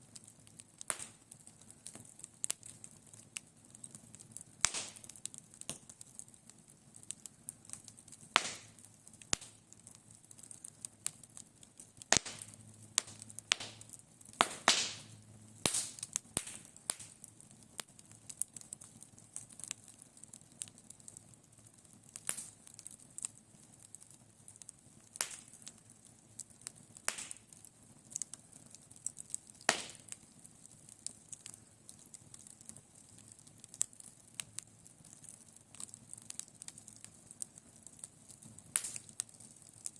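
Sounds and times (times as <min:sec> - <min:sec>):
wood fire crackling and popping: 0:00.0 - 0:39.9.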